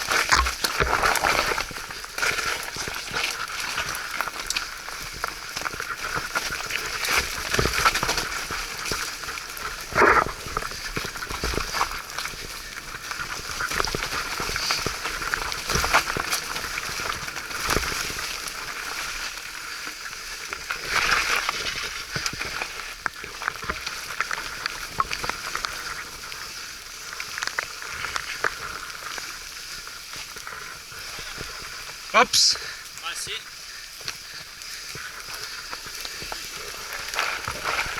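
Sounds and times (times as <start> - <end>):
bike tyres hissing on mud: 25.3 - 32.1, 32.8 - 37.9.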